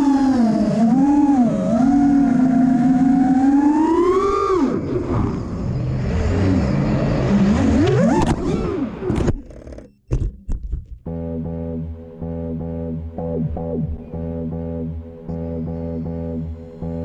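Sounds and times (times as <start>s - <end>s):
drone motors whining: 0.0s - 10.2s, 11.1s - 17.0s
electronic music: 11.1s - 17.0s.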